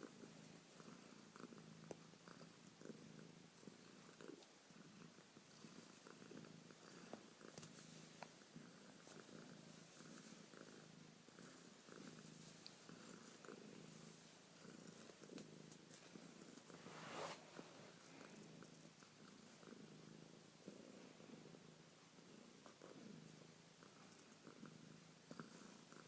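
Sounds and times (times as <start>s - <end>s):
cat purring: 0.0s - 26.0s.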